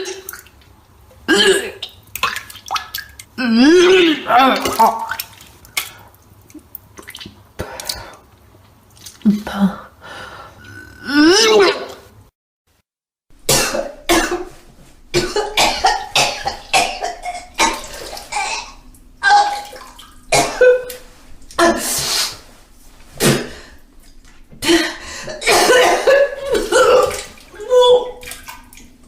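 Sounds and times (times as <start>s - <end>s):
person retching and vomiting: 1.3s - 1.8s, 10.7s - 12.0s, 13.5s - 22.5s, 23.1s - 23.9s, 24.5s - 28.7s
wet gurgling: 1.3s - 9.3s, 13.5s - 29.0s.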